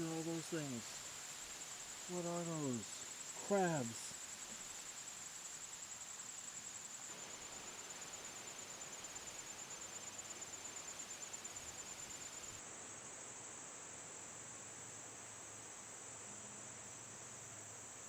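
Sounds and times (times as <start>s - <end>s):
insects trilling: 0.0s - 12.6s
soft background hiss: 0.0s - 18.0s.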